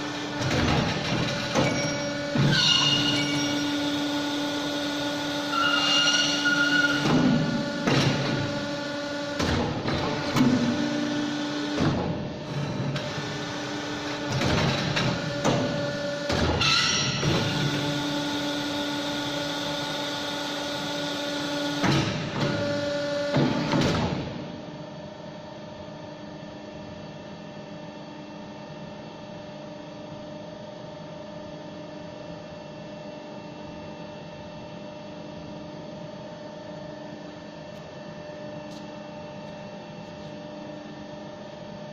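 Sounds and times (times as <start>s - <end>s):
machine motor hum: 0.0s - 25.0s
machine clanks and knocks: 0.3s - 3.9s, 5.6s - 8.5s, 14.3s - 17.6s, 23.3s - 24.4s.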